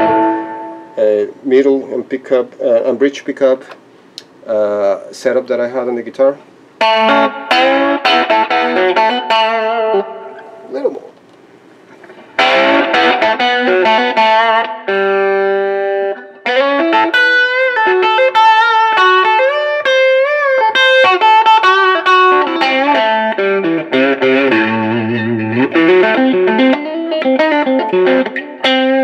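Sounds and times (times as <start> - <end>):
distorted electric guitar: 0.0 - 1.2, 6.8 - 11.2, 11.9 - 29.0.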